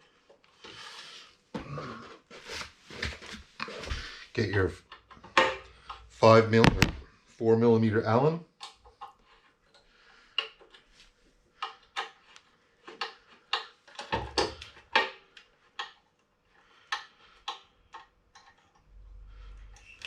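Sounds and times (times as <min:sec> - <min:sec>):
dull bumps: 0:06.6 - 0:07.0.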